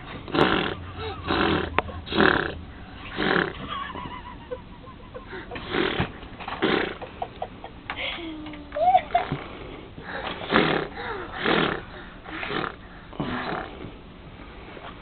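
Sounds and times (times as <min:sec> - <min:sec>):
person imitating snoring: 0:00.3 - 0:03.6, 0:10.4 - 0:13.9.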